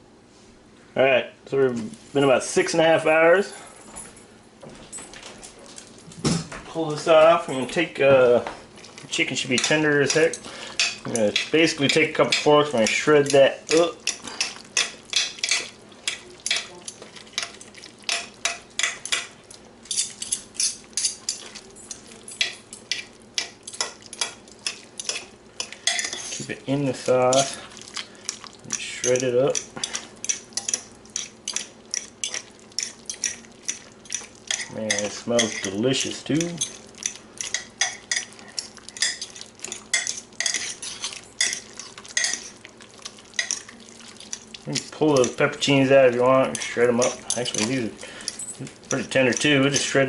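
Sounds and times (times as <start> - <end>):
metal forks clinking and scraping: 9.4 - 26.5, 27.2 - 27.7, 28.7 - 42.6, 43.3 - 50.0
forks scraping a crock: 23.8 - 42.6.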